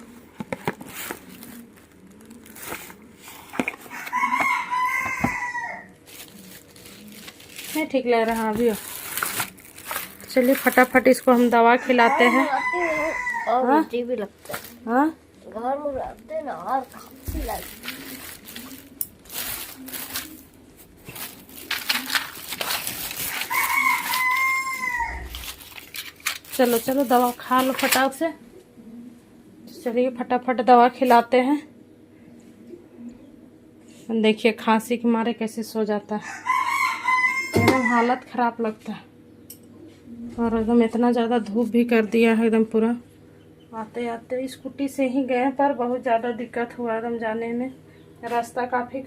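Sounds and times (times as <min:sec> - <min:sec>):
rustling and crinkling: 0:00.0 - 0:13.0, 0:13.8 - 0:28.2
dove cooing: 0:00.0 - 0:34.1, 0:39.0 - 0:41.4
rooster crowing: 0:03.9 - 0:06.0, 0:11.7 - 0:13.7, 0:23.3 - 0:25.5, 0:36.2 - 0:38.2.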